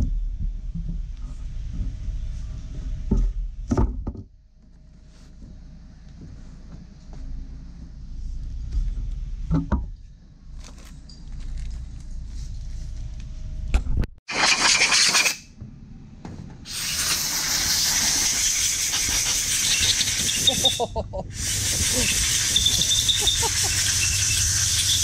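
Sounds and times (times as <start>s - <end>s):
spray foam can hissing: 16.7s - 25.0s.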